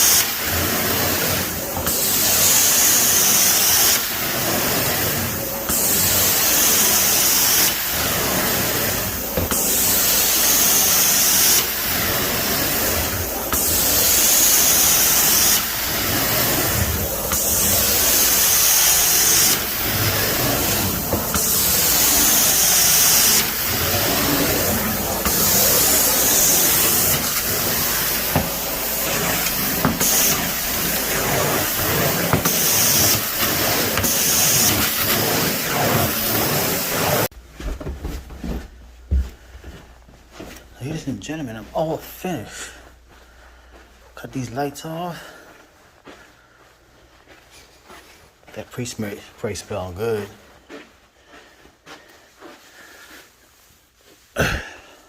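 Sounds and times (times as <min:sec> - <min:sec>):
carpet cleaning wand spray and suction: 0:00.0 - 0:37.3.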